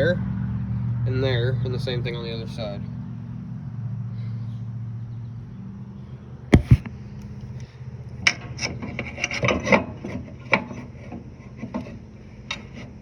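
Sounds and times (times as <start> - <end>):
wrench clicking and scraping on bolts: 8.3 - 9.8.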